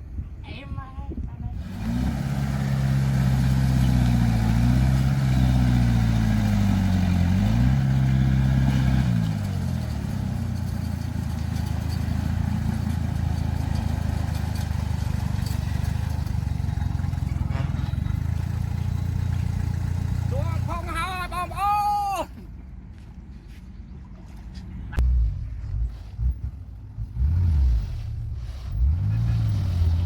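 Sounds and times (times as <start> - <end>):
heavy diesel engine running: 1.6 - 23.0.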